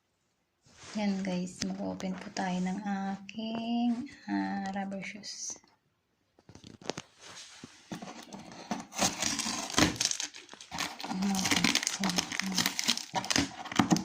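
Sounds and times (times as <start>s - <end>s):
packaging rustling and crinkling: 6.4s - 14.0s.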